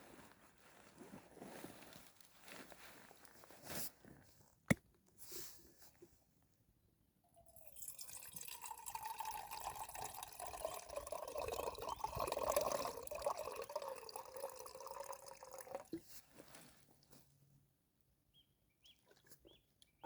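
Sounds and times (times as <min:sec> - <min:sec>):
water pouring into container: 0:07.4 - 0:16.1.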